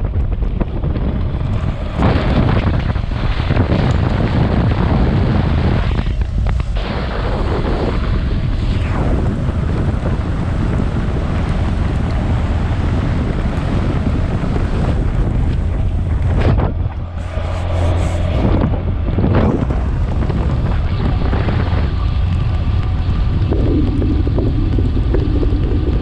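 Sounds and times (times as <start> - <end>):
wind buffeting microphone: 0.0 - 26.0
motorcycle engine running: 10.1 - 26.0.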